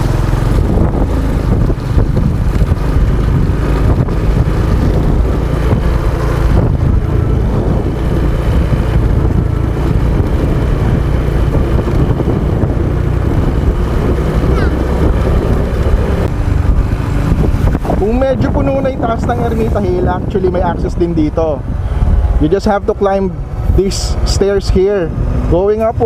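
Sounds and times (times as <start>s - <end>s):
motorcycle engine running: 0.0s - 26.0s
wind rumble on microphone: 0.0s - 26.0s.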